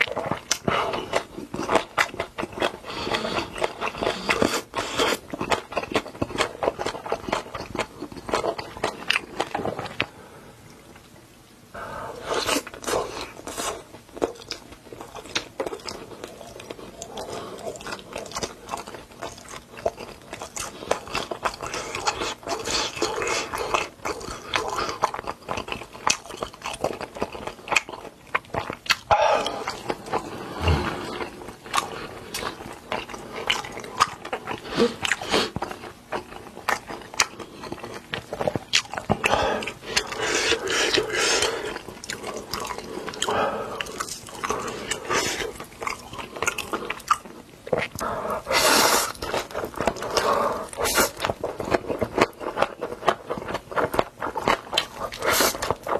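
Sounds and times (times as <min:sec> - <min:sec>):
person chewing crunchy food: 0:00.0 - 0:10.2, 0:12.0 - 0:55.9.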